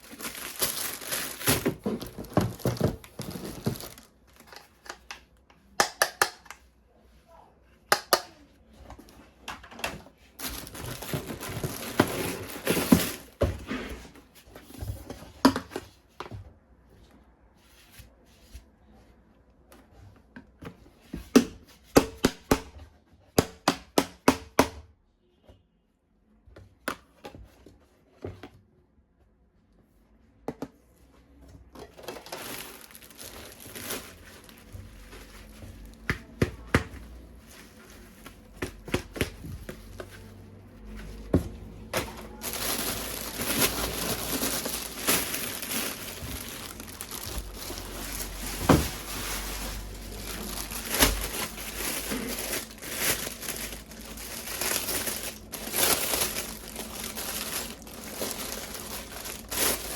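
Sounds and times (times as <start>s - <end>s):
plastic packaging crinkling and tearing: 0.0s - 5.1s, 10.4s - 13.4s, 31.9s - 36.1s, 41.8s - 59.9s.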